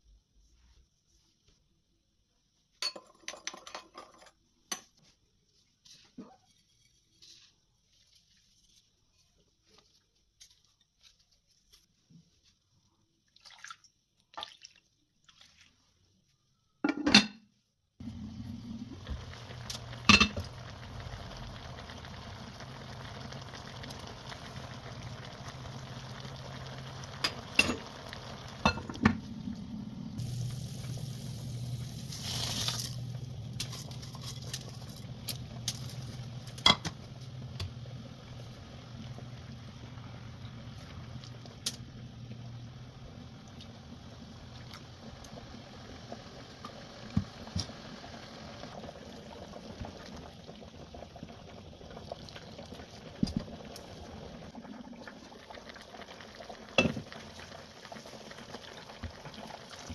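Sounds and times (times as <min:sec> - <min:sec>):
dishes and utensils clinking: 0:02.8 - 0:04.9, 0:20.0 - 0:20.4.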